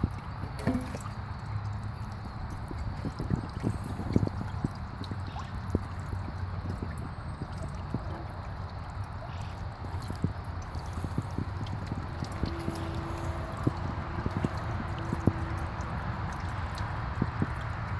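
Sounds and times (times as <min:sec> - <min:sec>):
fountain water trickling and dripping: 0:00.0 - 0:17.9
pump humming: 0:00.0 - 0:17.9.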